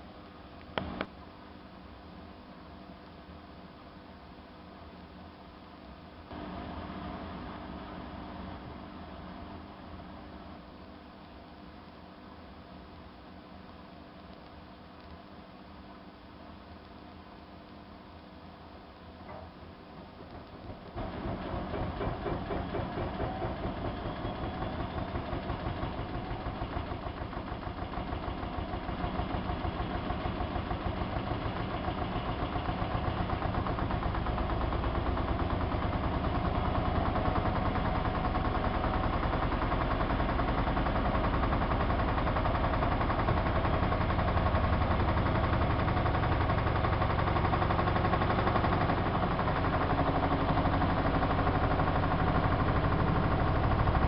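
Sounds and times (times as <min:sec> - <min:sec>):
washing machine spinning: 0:19.3 - 0:54.0.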